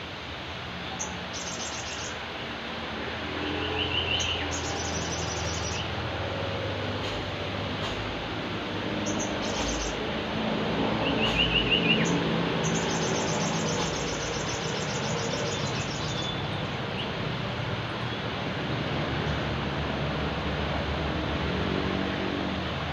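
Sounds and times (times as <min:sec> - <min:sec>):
steady hiss-like background noise: 0:00.0 - 0:22.9
bird calling with rapid trill: 0:04.0 - 0:05.9, 0:09.0 - 0:10.0, 0:11.2 - 0:16.4.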